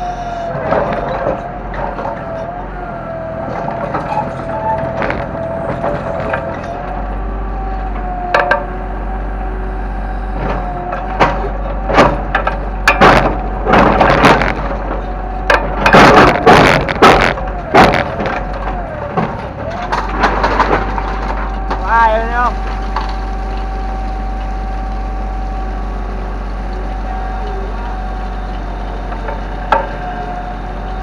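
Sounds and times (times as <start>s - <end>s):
excavator engine whine: 0.0s - 31.0s
wood cracking and crunching: 0.1s - 31.0s.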